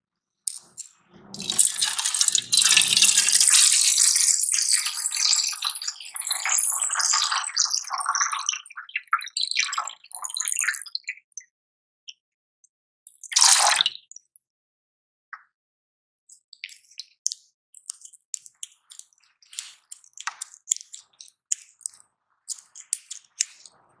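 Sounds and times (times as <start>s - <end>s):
liquid trickling and dripping: 0.5s - 7.9s
liquid pouring into container: 1.2s - 7.5s.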